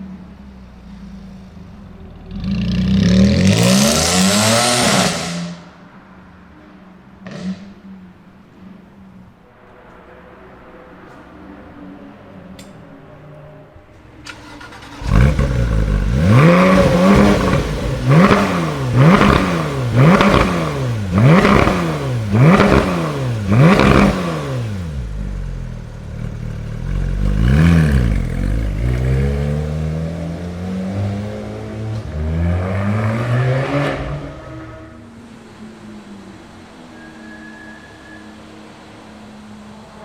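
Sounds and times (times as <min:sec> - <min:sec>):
car engine revving: 0:00.0 - 0:05.8, 0:14.2 - 0:37.1.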